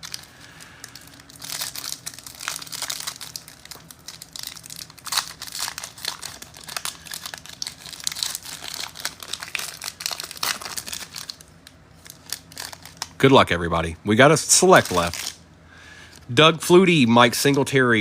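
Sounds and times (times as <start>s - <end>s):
foil wrappers crinkling and tearing: 0.0s - 13.3s, 14.4s - 15.4s.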